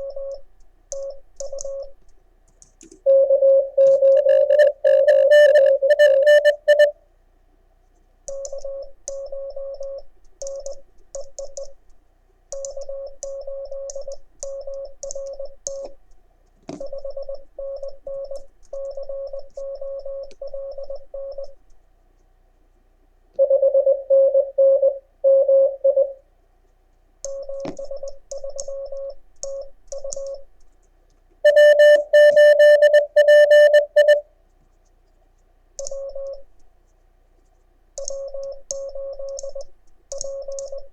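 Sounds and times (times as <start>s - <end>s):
morse code tones: 3.1s - 7.0s, 23.4s - 26.2s, 31.5s - 34.2s
faint clicks: 37.4s - 40.8s.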